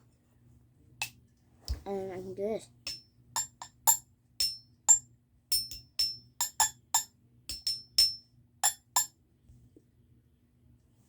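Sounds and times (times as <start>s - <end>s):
cups tapped on drum: 2.9s - 9.1s.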